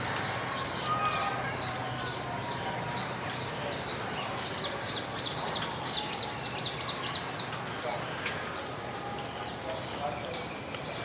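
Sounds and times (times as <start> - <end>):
village background noise: 0.0 - 11.0
bird high down-slurred call: 0.6 - 2.6.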